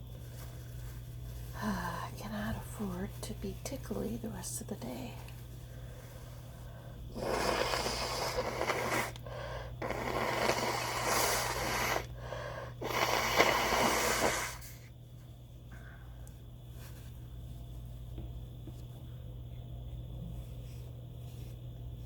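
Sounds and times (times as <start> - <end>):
person breathing noisily: 5.6 - 14.8.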